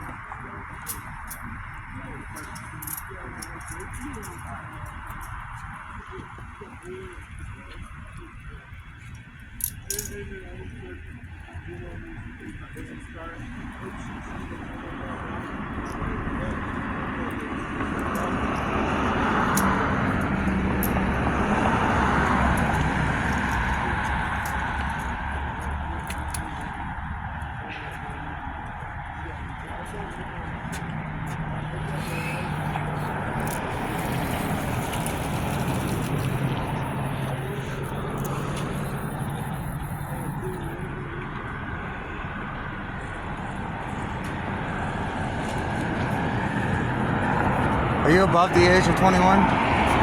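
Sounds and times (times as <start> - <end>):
traffic rumble: 0.0 - 50.0
vehicle passing: 13.6 - 50.0.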